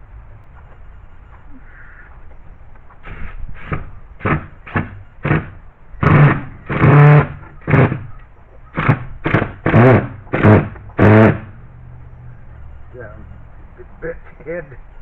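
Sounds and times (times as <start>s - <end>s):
cordless drill driving screws into wood: 3.2s - 8.1s, 8.8s - 11.4s.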